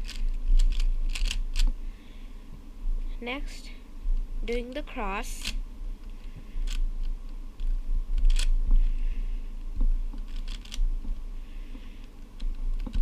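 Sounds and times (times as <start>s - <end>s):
plastic puzzle cube clicking: 0.0s - 1.7s, 10.3s - 10.8s
steady low hum: 0.0s - 13.0s.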